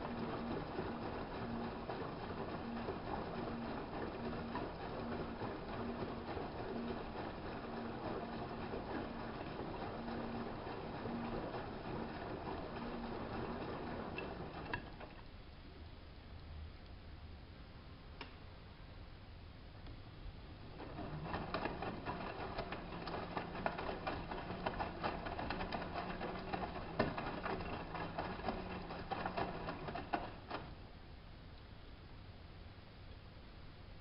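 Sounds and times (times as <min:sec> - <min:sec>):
washing machine motor hum: 0:00.0 - 0:15.4, 0:20.2 - 0:31.1
rapid patter of clicks: 0:20.8 - 0:30.7.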